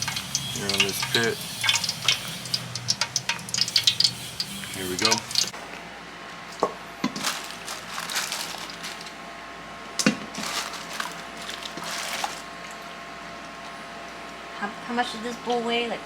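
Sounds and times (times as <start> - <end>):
hot oil sizzling: 0.0 - 5.6.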